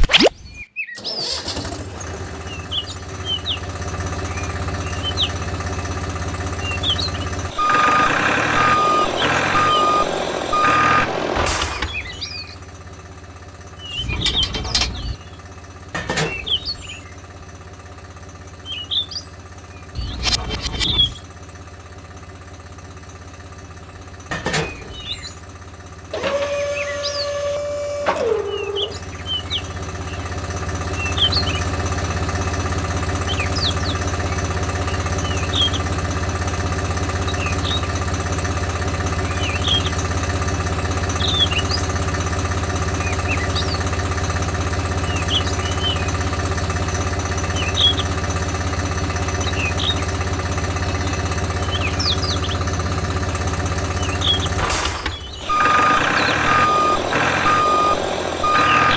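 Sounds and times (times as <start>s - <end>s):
birds chirping: 0.0s - 12.9s, 13.5s - 21.6s, 23.2s - 25.6s, 26.4s - 58.9s
small engine running: 1.0s - 58.9s
steady whine: 7.5s - 12.2s, 20.0s - 21.2s, 54.6s - 58.9s.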